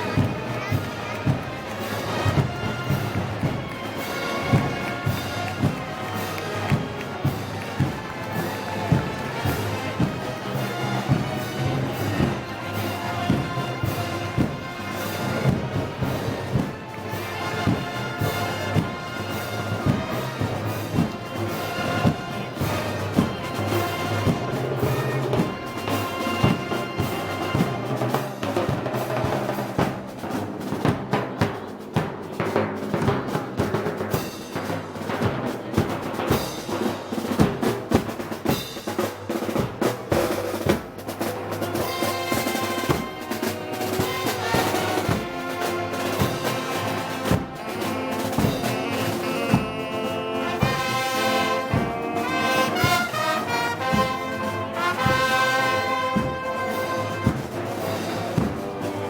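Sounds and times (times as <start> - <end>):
brass sustained notes: 0.0 - 28.0, 41.2 - 59.0
heavy drum strikes: 0.0 - 59.0.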